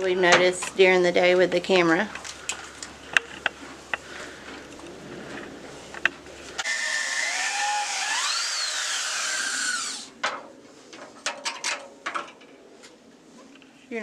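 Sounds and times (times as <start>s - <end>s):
power drill drilling: 6.6s - 10.1s.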